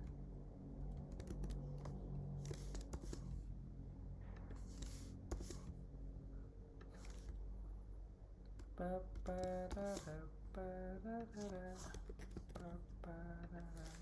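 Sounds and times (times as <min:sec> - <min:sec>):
steady low hum: 0:00.0 - 0:14.0
keyboard typing: 0:00.8 - 0:03.4, 0:04.2 - 0:05.8, 0:06.8 - 0:07.4, 0:08.4 - 0:10.6, 0:11.2 - 0:14.0.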